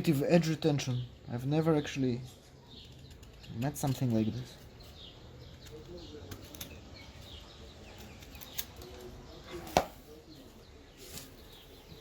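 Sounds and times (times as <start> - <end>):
small birds chirping: 0.0 - 12.0
sharp wood crack: 9.6 - 10.1.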